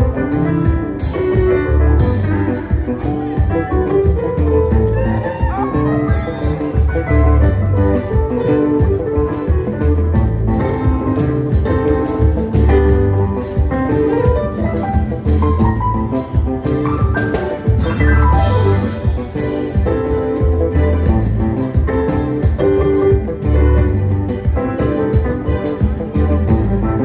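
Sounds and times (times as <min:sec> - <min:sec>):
steady drum beat: 0:00.0 - 0:27.0
heavy bass line: 0:01.4 - 0:11.0, 0:14.5 - 0:24.8, 0:25.4 - 0:27.0.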